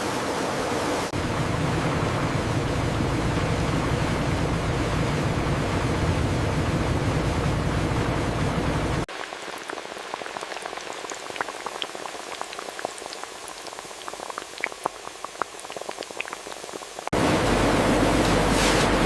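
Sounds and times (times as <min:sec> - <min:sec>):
loud steady rushing noise: 0:00.0 - 0:09.1
fries frying in hot oil: 0:09.0 - 0:19.0.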